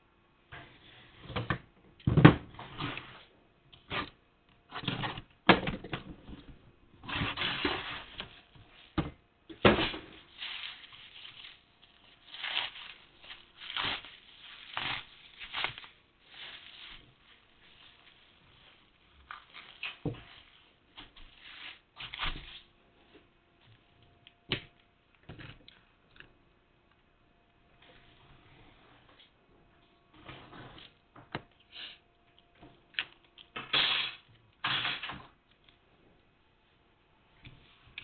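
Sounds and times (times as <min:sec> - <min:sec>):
packaging rustling and scraping: 0:06.4 - 0:09.0, 0:09.7 - 0:22.7.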